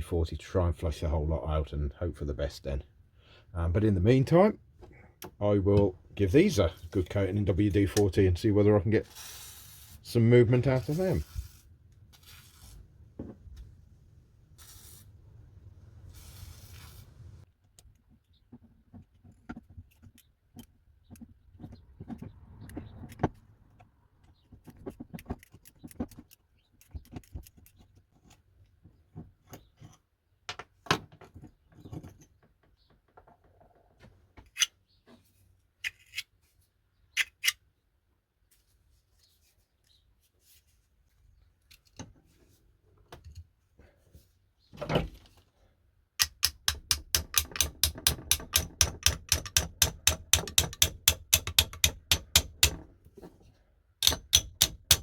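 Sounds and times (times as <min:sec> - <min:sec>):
spanners clicking and knocking: 0:46.2 - 0:52.9, 0:54.0 - 0:55.0.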